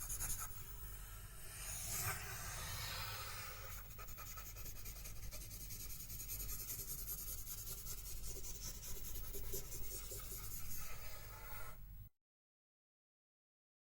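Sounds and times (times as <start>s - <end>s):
pencil writing on paper: 0.0s - 0.6s, 3.7s - 11.7s.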